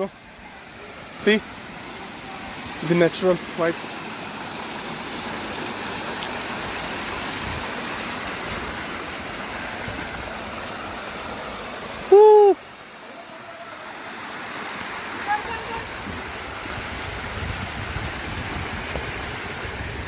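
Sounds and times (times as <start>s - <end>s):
mountain stream rushing: 0.0s - 20.0s
hooting call: 12.1s - 14.0s.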